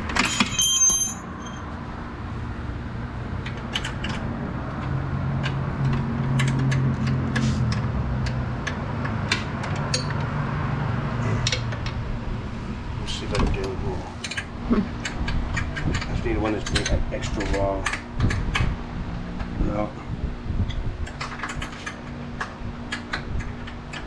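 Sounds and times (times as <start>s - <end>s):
metal wrench clinking: 0.2s - 1.6s, 9.8s - 10.2s
steady low hum: 1.0s - 24.0s.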